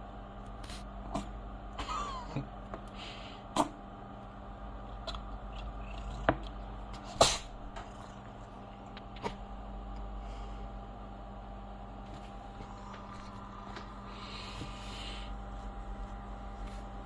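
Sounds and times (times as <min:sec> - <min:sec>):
steady low hum: 0:00.0 - 0:17.0
cat sneezing: 0:07.0 - 0:07.6.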